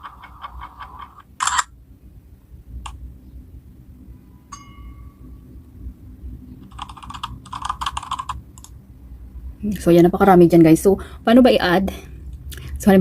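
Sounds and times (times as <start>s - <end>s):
bright metallic ding: 4.5s - 5.3s
rapid clicking: 6.7s - 8.7s.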